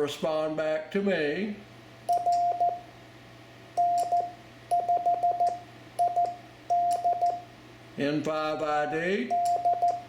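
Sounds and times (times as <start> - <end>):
morse code tone: 2.1 - 2.8, 3.8 - 7.5, 9.3 - 10.0.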